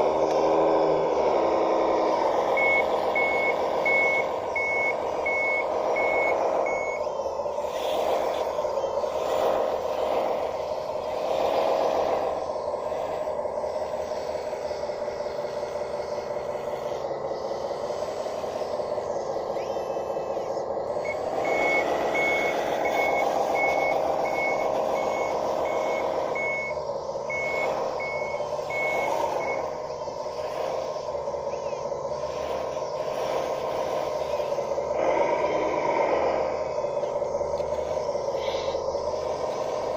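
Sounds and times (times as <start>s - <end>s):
model bulldozer engine: 0.0s - 39.9s
high reverse-warning beep: 2.1s - 7.4s, 19.3s - 31.9s.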